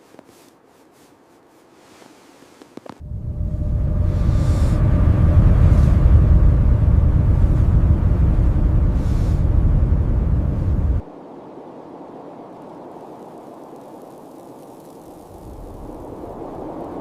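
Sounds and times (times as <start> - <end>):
steady hiss: 0.0 - 17.0
low rumbling roar: 3.0 - 11.1.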